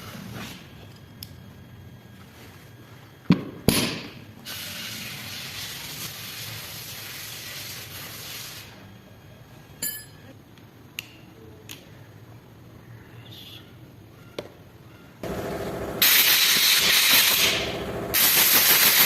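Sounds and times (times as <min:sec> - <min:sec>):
ringing metallic clink: 0:09.8 - 0:10.3.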